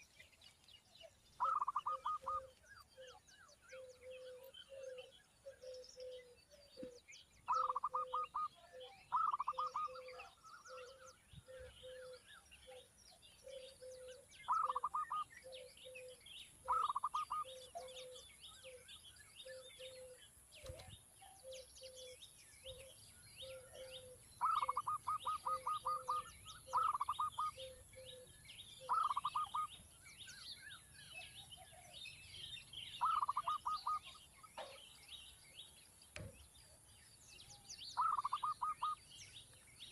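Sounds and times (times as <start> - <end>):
faint high bird chirps: 0.0 - 39.9
rapid stuttering bird calls: 1.4 - 3.2, 7.5 - 11.1, 14.5 - 15.3, 16.7 - 18.0, 23.5 - 27.8, 28.8 - 29.8, 33.0 - 34.7, 38.0 - 39.0.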